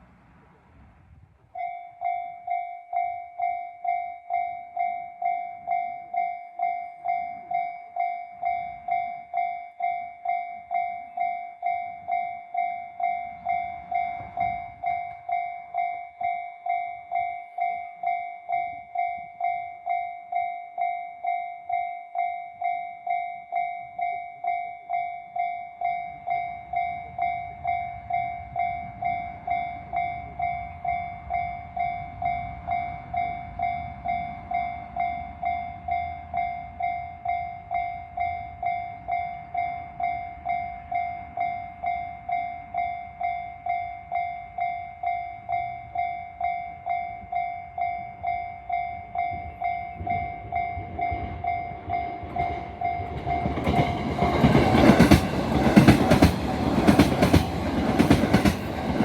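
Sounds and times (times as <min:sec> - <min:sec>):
train rumble: 0:00.0 - 0:19.9, 0:25.3 - 0:59.0
level-crossing warning bell: 0:01.6 - 0:59.0.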